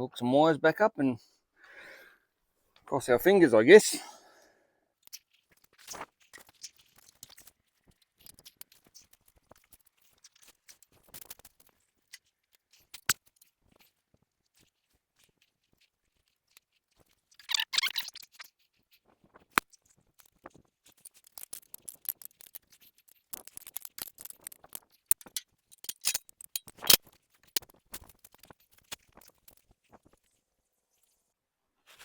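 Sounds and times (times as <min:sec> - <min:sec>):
tools and wire connectors handled: 0:19.3 - 0:30.1.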